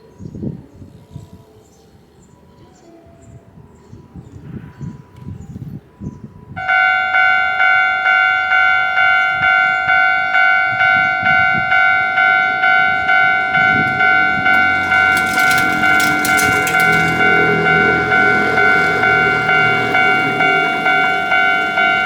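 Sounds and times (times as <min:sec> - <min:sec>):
level-crossing warning bell: 0:06.6 - 0:22.0
rattling clattering noise: 0:12.9 - 0:21.4.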